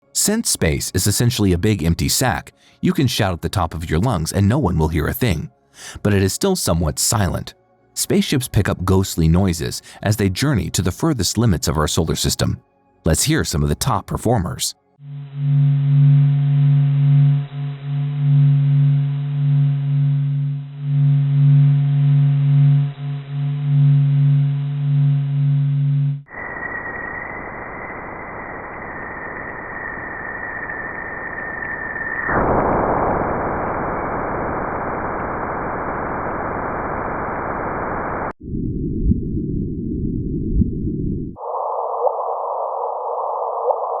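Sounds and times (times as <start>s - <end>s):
steady low tone: 13.1s - 41.4s
deep pulsing hum: 15.0s - 26.3s, 38.4s - 41.4s
high steady whistle: 15.0s - 35.0s.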